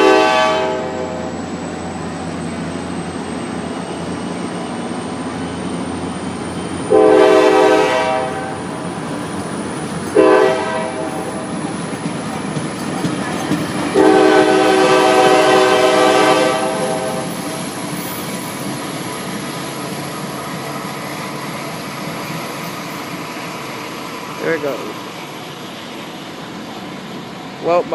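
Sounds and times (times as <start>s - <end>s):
locomotive air horn blasts: 0.0s - 1.4s, 6.9s - 8.6s, 10.2s - 11.4s, 14.0s - 17.3s
train pulling out: 0.0s - 27.9s.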